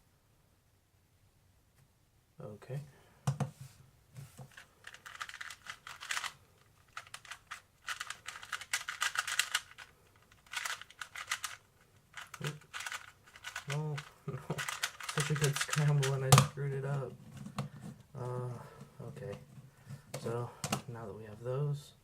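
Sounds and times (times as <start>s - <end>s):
plastic puzzle cube clicking: 4.5s - 16.6s.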